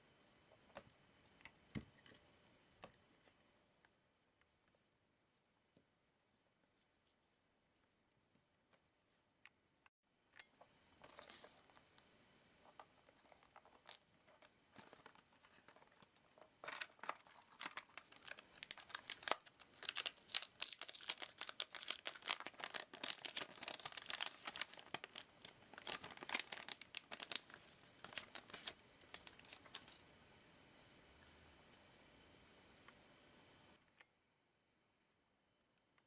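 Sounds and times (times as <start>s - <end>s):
plastic crinkling: 12.8s - 30.0s.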